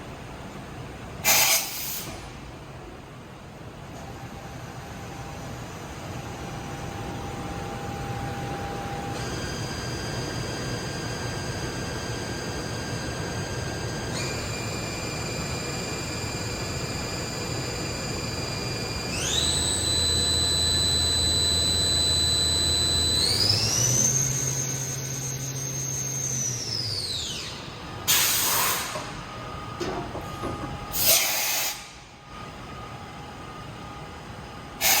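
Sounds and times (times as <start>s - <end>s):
machine spindle whine: 4.0s - 35.0s
machine hum: 4.9s - 31.0s
air hissing bursts: 28.1s - 29.1s, 30.9s - 32.0s, 34.8s - 35.0s.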